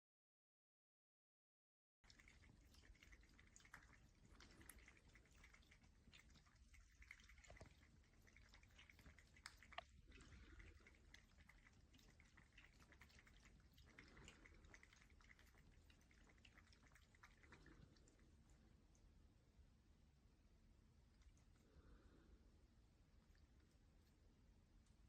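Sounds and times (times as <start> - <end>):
water dripping and trickling: 2.0 - 19.1.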